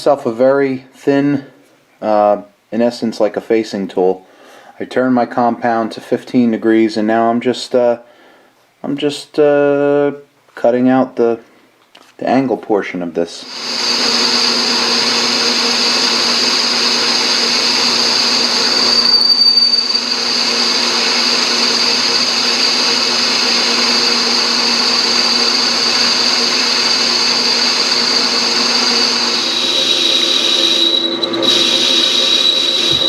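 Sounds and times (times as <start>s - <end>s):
metal lathe cutting: 13.4s - 33.0s.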